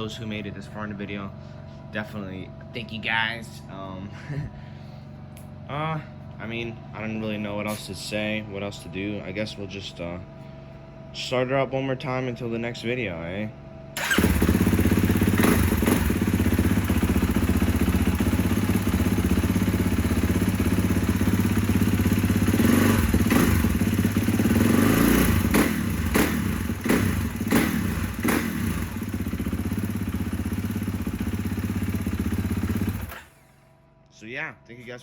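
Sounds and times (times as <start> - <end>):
dirt bike engine revving: 14.0 - 33.4.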